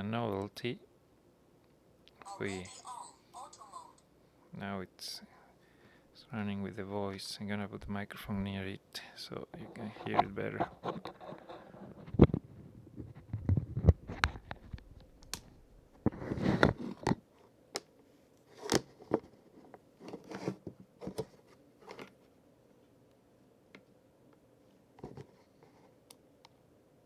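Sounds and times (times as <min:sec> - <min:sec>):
microphone handling clicks and rubbing: 0:09.5 - 0:17.2.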